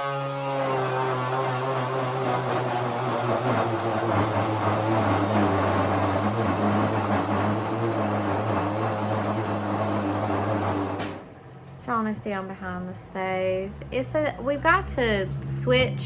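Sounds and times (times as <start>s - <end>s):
power saw cutting countertop: 0.0s - 11.2s.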